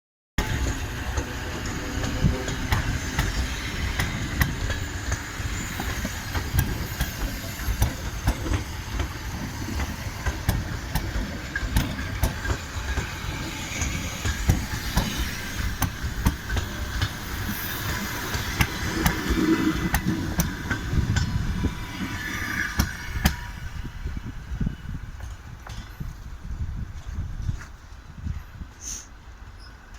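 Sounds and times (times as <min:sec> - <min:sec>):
train wheels clattering: 0:00.4 - 0:23.8.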